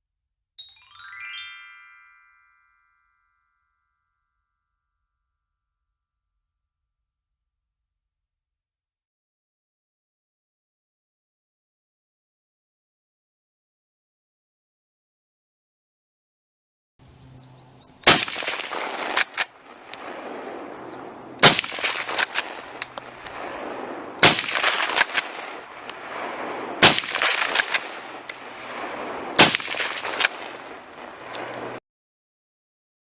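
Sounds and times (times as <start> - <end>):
echoing gunshots: 18.0 - 31.8
sharp clicks: 18.1 - 20.1, 21.4 - 23.4, 24.2 - 26.0, 26.8 - 28.4, 29.4 - 31.6.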